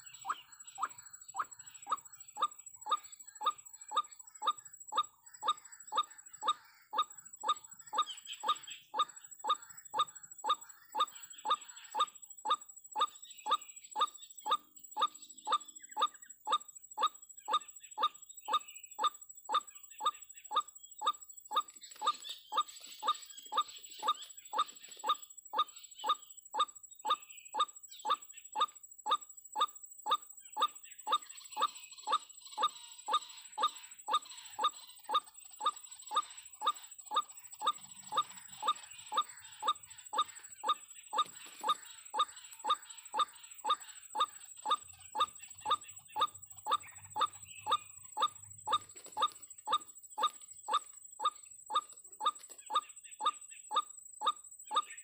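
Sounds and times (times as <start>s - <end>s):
waterhen calling: 30.6s - 52.8s.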